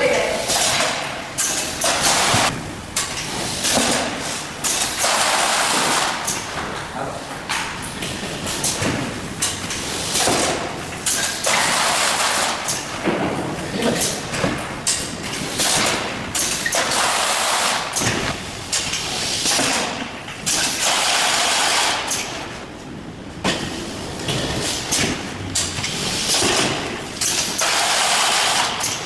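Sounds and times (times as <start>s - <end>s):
cartons knocking and thudding: 13.0s - 13.6s.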